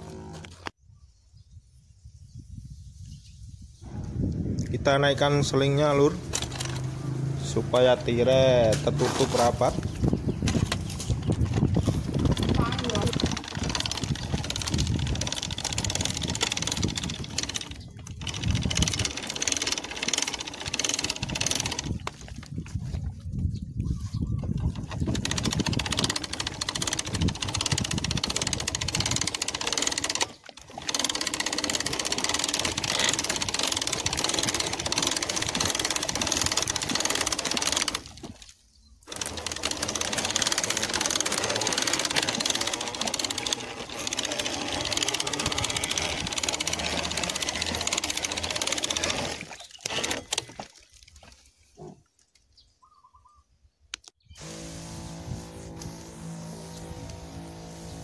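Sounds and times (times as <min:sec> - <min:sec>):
motor-driven sprayer running: 0:00.0 - 0:00.7, 0:05.9 - 0:22.5, 0:24.8 - 0:38.3, 0:39.1 - 0:50.4, 0:54.4 - 0:58.0
hiss of spray: 0:54.4 - 0:58.0.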